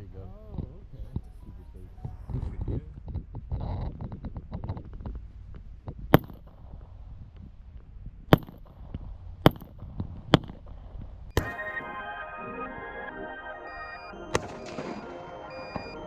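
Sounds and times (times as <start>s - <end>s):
music: 1.2s - 2.6s, 11.4s - 16.0s
gunshots: 6.2s - 6.6s, 8.4s - 8.7s, 14.2s - 16.0s.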